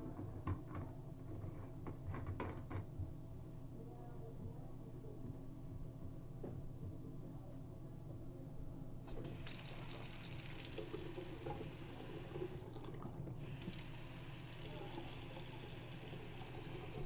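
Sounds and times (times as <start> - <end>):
faucet water running into sink: 9.1 - 17.0.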